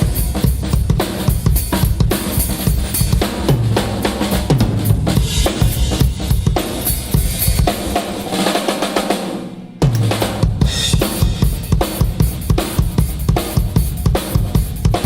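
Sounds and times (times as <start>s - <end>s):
bass drum: 0.0s - 8.6s, 9.8s - 15.0s
cymbals: 0.0s - 15.0s
tom fills: 2.4s - 12.2s.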